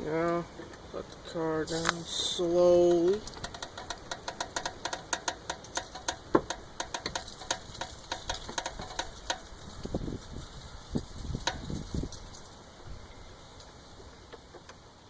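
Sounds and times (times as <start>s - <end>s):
car jack clicking: 3.0s - 9.6s.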